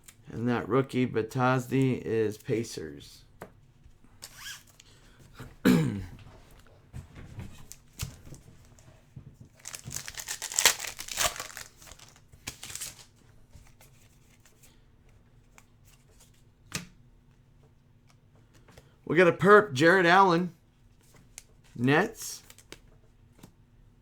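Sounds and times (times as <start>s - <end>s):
plastic wrapper crinkling and tearing: 7.6s - 8.9s, 9.5s - 13.2s
cards clicking: 9.6s - 13.1s.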